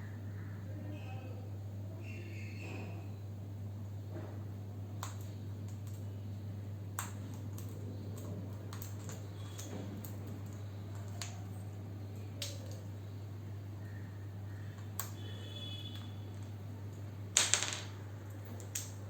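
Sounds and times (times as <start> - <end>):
light sharp clicks and taps: 5.0 - 6.1, 6.9 - 11.4, 14.7 - 15.2, 18.3 - 19.0.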